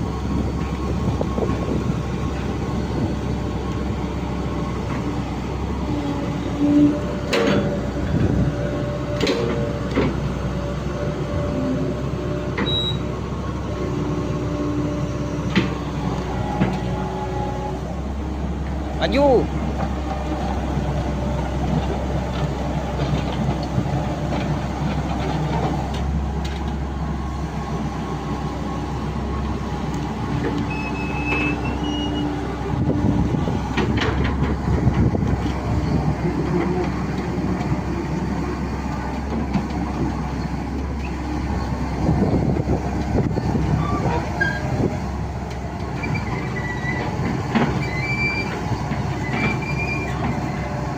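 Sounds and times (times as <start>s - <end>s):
excavator diesel engine running: 0.0s - 50.9s
undercarriage squealing: 30.7s - 32.3s, 43.8s - 44.7s, 46.0s - 50.4s.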